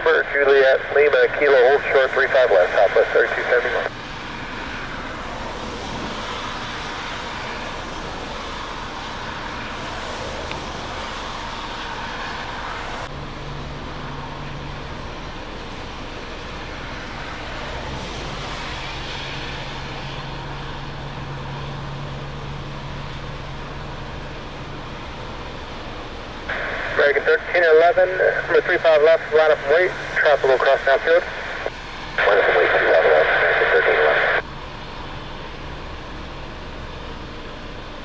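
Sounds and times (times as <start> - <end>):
jet airliners rushing: 0.0 - 38.0
low steady hum: 20.0 - 38.0.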